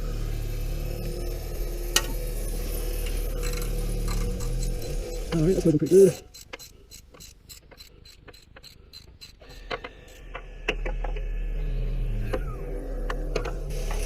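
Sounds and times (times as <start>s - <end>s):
ratchet wrench clicking: 3.0s - 10.2s.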